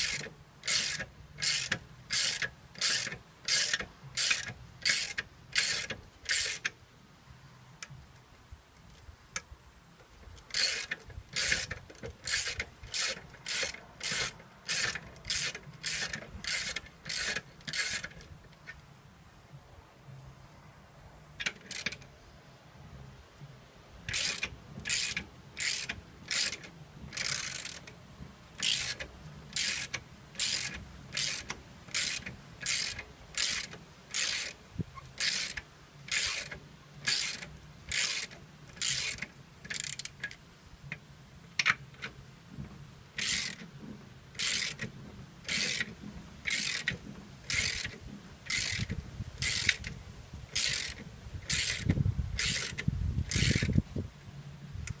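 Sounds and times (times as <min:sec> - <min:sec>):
ratchet wrench clicking: 0:00.0 - 0:06.8, 0:10.4 - 0:18.8, 0:21.4 - 0:22.0, 0:24.1 - 0:28.0, 0:28.6 - 0:40.4, 0:43.2 - 0:43.7, 0:44.4 - 0:44.9, 0:45.5 - 0:53.8.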